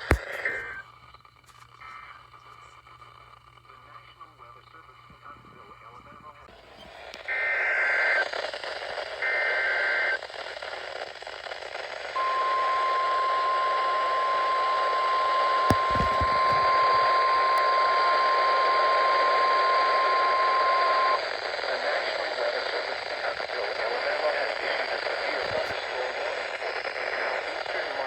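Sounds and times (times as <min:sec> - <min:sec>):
radio static: 0:00.0 - 0:00.8, 0:01.4 - 0:28.0
steady warning alarm tone: 0:12.2 - 0:21.2.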